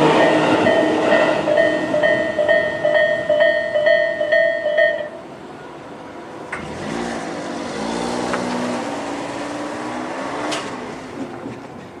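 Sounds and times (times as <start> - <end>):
car engine pulling away: 6.5 - 11.3.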